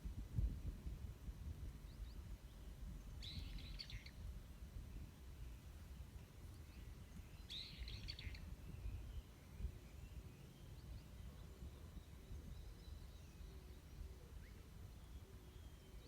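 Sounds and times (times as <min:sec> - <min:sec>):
birds chirping: 0:03.0 - 0:04.2, 0:05.0 - 0:16.0.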